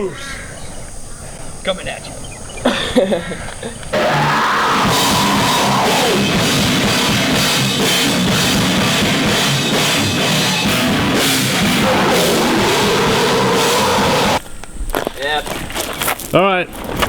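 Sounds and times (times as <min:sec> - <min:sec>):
fast pounding drum beat: 0:04.0 - 0:14.4
loud rock music: 0:04.0 - 0:14.4.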